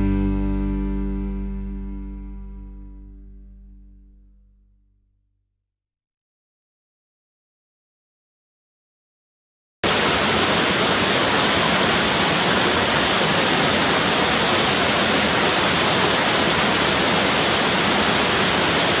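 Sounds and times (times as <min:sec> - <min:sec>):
loud steady rushing hiss: 0:09.9 - 0:19.0.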